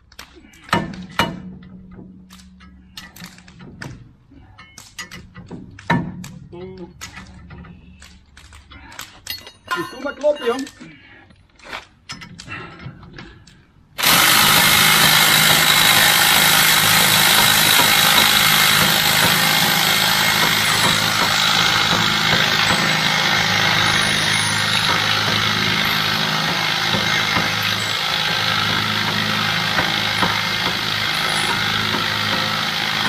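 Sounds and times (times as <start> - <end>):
machine running with hiss and hum: 14.0 - 33.0.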